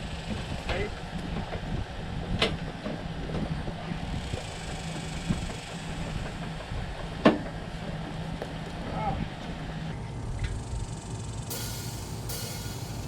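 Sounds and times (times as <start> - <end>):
engine rumbling: 9.8 - 13.0.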